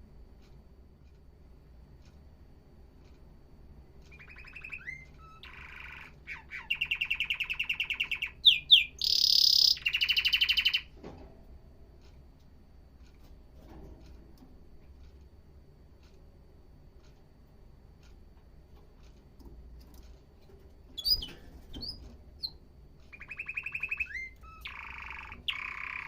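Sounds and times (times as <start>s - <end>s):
canary singing: 4.0s - 10.9s, 20.8s - 26.0s.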